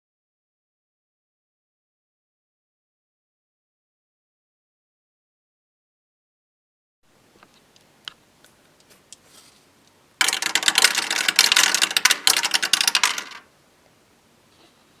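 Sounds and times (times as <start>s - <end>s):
dice clattering down dice tower: 10.2s - 13.5s.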